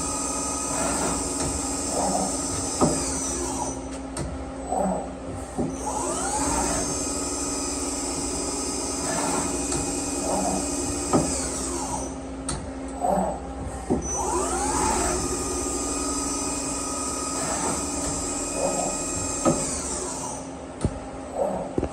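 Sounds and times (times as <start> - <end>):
lathe spindle whine: 0.0 - 3.8, 14.1 - 20.5
steady machine hum: 0.0 - 21.9.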